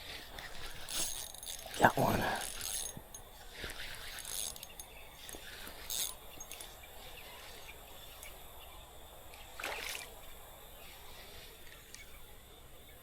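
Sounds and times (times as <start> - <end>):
creek water running: 0.0 - 12.0
short splashes: 9.6 - 10.2.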